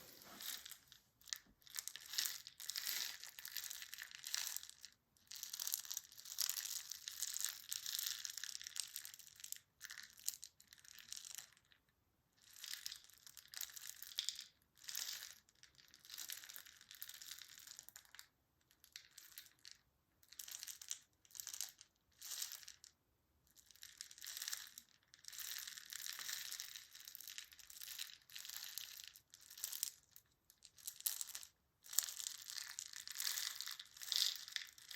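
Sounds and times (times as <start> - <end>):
crinkling and crushing: 0.0 - 4.4, 32.5 - 34.9.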